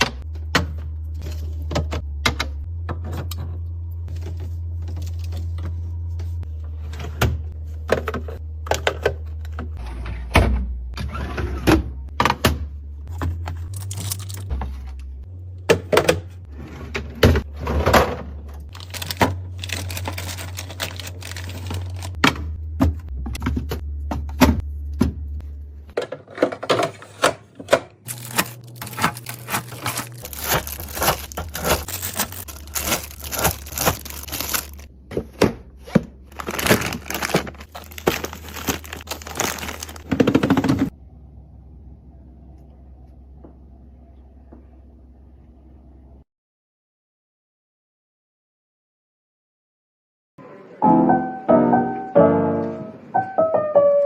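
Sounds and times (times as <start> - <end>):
plastic packaging crinkling: 18.7 - 22.2, 28.1 - 34.9, 36.3 - 40.9.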